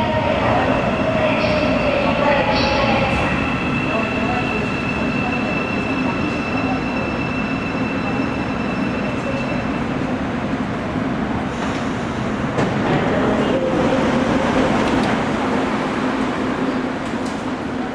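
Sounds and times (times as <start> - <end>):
subway train rumble: 0.0 - 17.9.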